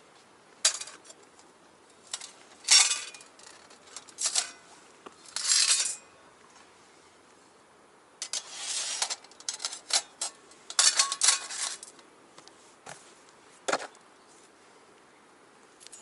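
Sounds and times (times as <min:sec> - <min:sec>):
metal panels clattering: 0:00.6 - 0:01.2, 0:02.1 - 0:04.7, 0:08.2 - 0:11.9
metallic ring: 0:05.4 - 0:06.1.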